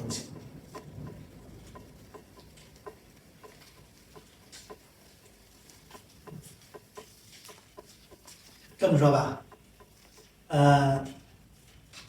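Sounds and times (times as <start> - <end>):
faint small clicks and taps: 0.0 - 10.5.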